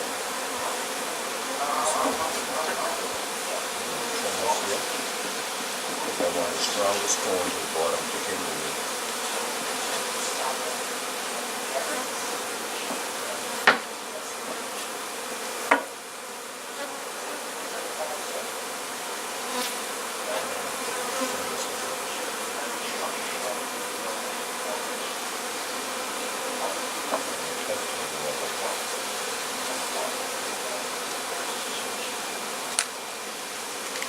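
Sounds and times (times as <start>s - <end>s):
honeybees buzzing: 0.0s - 34.0s
sharp knocks: 13.6s - 13.9s, 15.7s - 15.9s.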